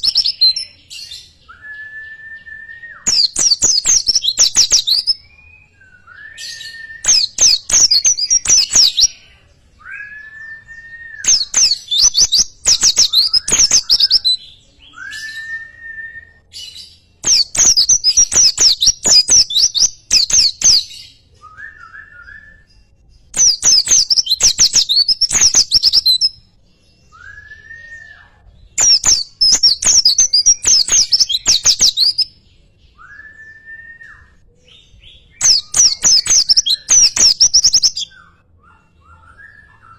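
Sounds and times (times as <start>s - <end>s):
bird chirping rapidly: 0.0s - 0.6s, 3.1s - 5.2s, 7.0s - 9.1s, 11.2s - 14.4s, 17.2s - 20.8s, 23.4s - 26.3s, 28.8s - 32.3s, 35.4s - 38.1s.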